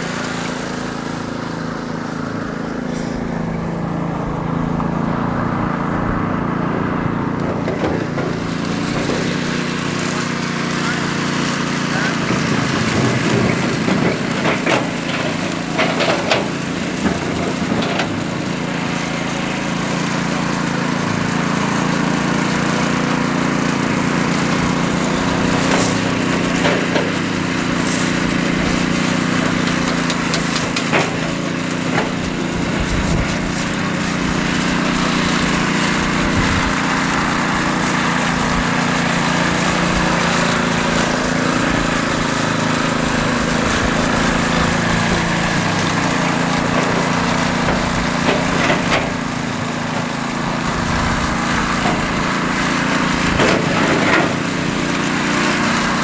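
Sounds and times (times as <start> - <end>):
small engine running: 0.0 - 56.0
sharp knocks and clatters: 7.4 - 10.3, 12.2 - 19.1, 24.7 - 55.8.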